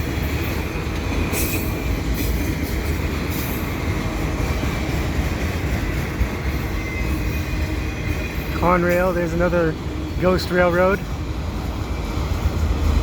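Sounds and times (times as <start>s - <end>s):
train wheels rumbling on rails: 0.0s - 13.0s
high-pitched wheel squeals: 1.3s - 3.9s, 6.4s - 8.6s.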